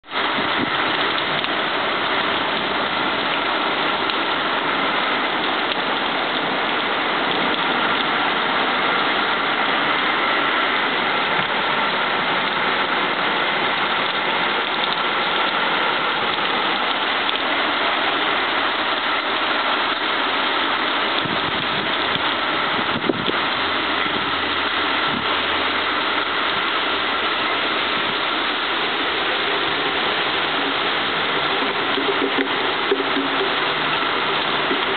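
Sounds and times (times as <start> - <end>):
heavy rain pouring: 0.0 - 34.9.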